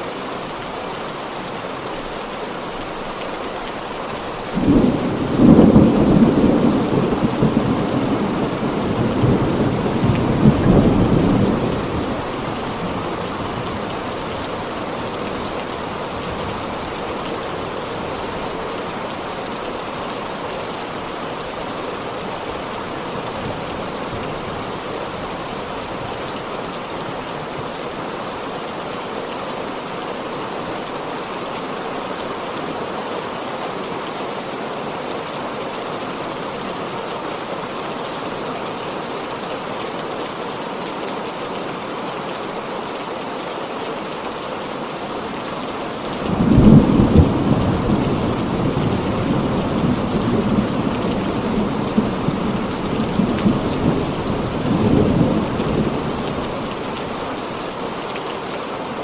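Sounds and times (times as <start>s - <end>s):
heavy rain falling: 0.0s - 59.0s
thunder rumbling: 4.6s - 14.7s, 46.2s - 57.3s.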